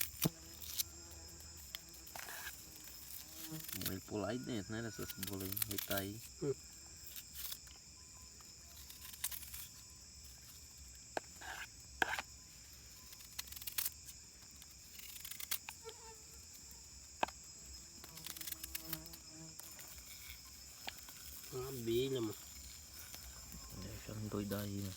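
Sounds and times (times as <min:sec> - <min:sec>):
bee buzzing: 0:00.0 - 0:04.2, 0:15.2 - 0:24.9
high insect chorus: 0:00.0 - 0:24.9.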